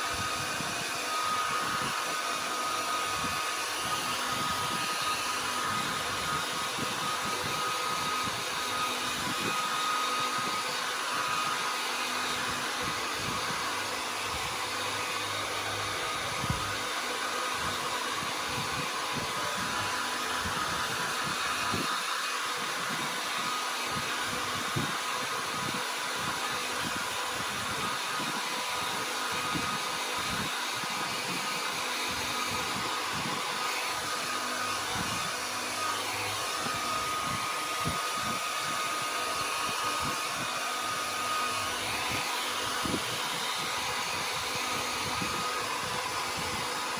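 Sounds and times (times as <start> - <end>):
dryer running: 0.0 - 46.9
electric fan running: 0.0 - 46.9.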